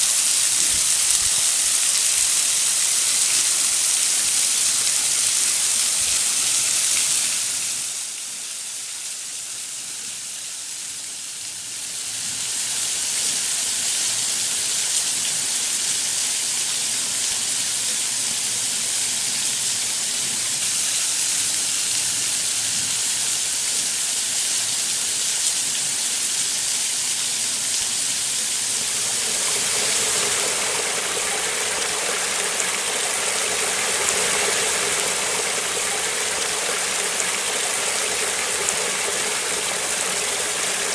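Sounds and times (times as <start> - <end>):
waterfall rushing water: 0.0 - 8.2, 22.9 - 40.9.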